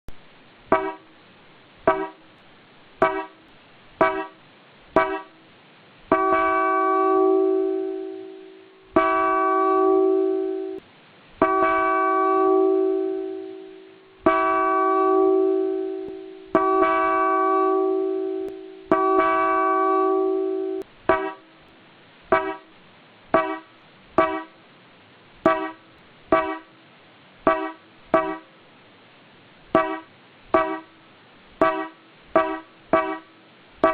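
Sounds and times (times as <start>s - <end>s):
electronic horn toots and blasts: 0.7s - 1.1s, 1.9s - 2.2s, 3.0s - 3.4s, 4.0s - 4.4s, 5.0s - 5.3s, 6.1s - 10.8s, 11.4s - 21.4s, 22.3s - 22.7s, 23.4s - 24.6s, 25.4s - 26.7s, 27.4s - 28.5s, 29.8s - 30.9s, 31.6s - 33.9s.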